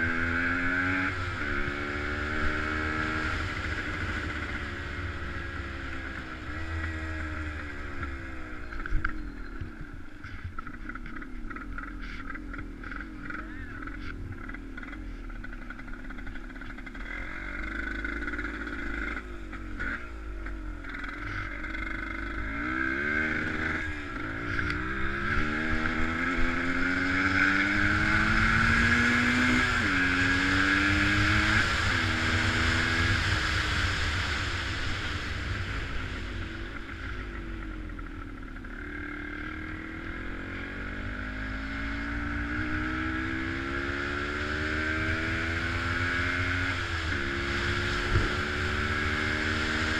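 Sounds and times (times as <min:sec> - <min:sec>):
vehicle engine revving: 0:10.2 - 0:49.9.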